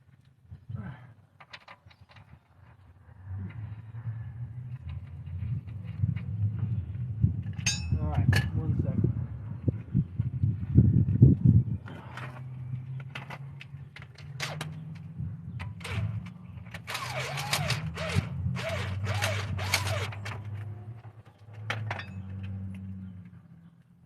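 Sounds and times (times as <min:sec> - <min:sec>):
metal tools clicking and knocking: 0:07.5 - 0:08.6, 0:21.3 - 0:23.0
scraping and rattling bursts: 0:11.9 - 0:23.4.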